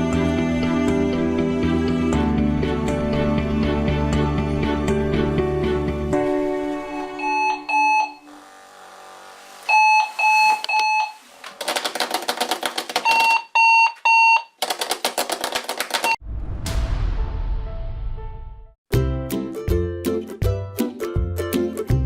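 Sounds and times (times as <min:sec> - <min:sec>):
alarm clock beeps: 0:06.9 - 0:08.3, 0:09.7 - 0:11.2, 0:13.0 - 0:14.6.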